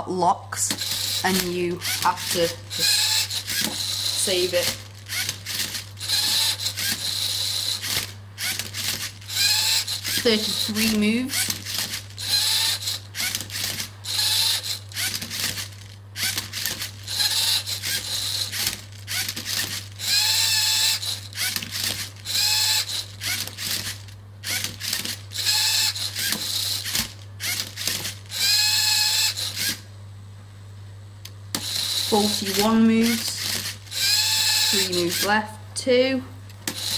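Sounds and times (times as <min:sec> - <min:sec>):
mechanical clicks: 0:00.7 - 0:29.8, 0:31.2 - 0:35.4, 0:36.5 - 0:36.9
servo motors whirring: 0:00.7 - 0:29.8, 0:31.6 - 0:35.4, 0:36.6 - 0:36.9.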